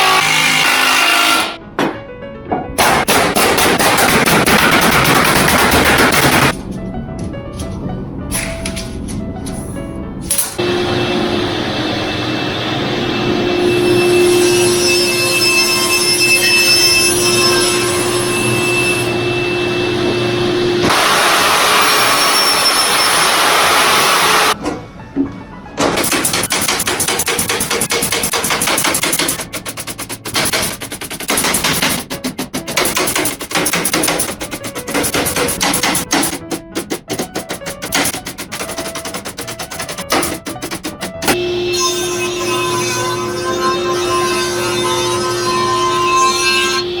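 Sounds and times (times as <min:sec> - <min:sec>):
router cutting wood: 0:00.0 - 0:01.6, 0:10.6 - 0:24.6, 0:41.2 - 0:47.0
background music: 0:00.0 - 0:10.7, 0:24.5 - 0:41.4.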